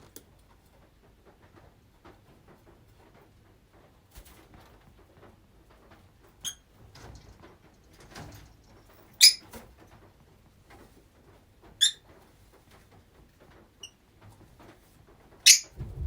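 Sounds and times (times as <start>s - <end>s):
lovebirds chirping: 15.5s - 15.7s.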